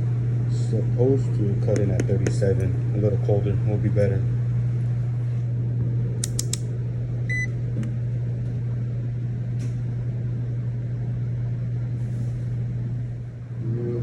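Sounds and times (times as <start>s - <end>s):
low mechanical hum: 0.0s - 14.0s
sharp clicks: 6.2s - 6.7s.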